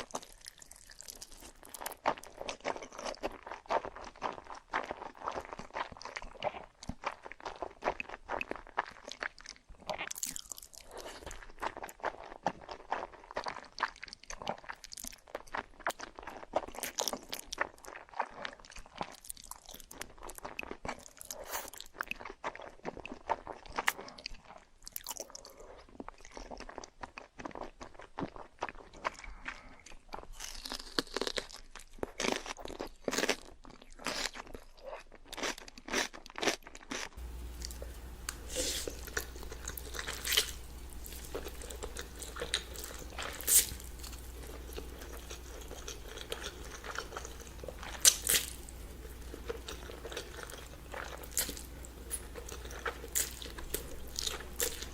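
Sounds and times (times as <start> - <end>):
person chewing crunchy food: 0.0 - 24.2, 24.9 - 54.9.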